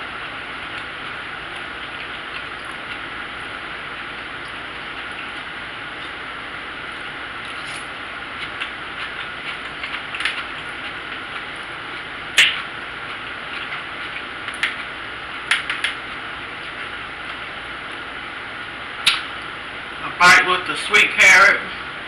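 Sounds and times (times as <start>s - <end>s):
person chewing: 0.1s - 6.2s, 6.9s - 18.1s.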